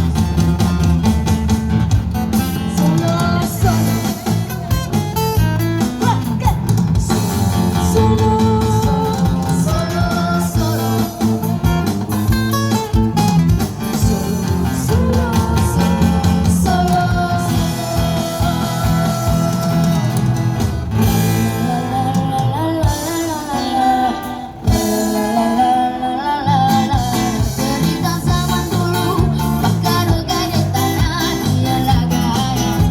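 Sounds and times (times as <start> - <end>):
bass line: 0.0 - 32.9
strummed guitar: 0.0 - 32.9
person singing: 2.7 - 4.8, 6.0 - 12.0, 13.9 - 20.3, 21.0 - 32.9.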